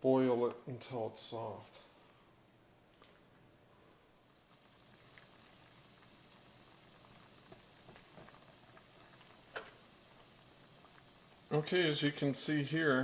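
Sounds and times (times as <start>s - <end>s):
pot boiling with bubbling: 4.2s - 13.0s.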